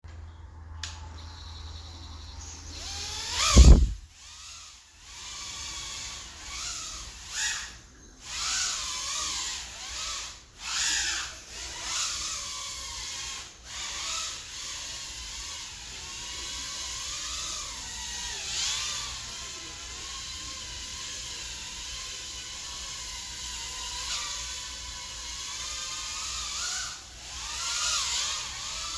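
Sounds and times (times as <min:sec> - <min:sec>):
drone motors whining: 0:01.4 - 0:04.0
loud thump: 0:03.4 - 0:04.0.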